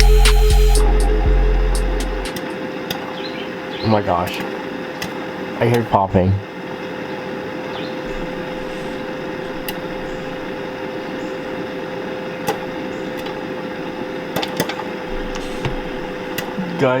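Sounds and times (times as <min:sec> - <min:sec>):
air fryer fan humming: 0:00.0 - 0:17.0.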